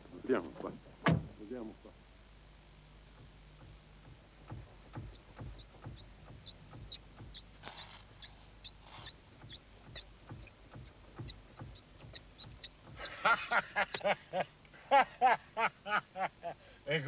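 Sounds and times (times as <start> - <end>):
short high-pitched squeaks: 5.0 - 14.2.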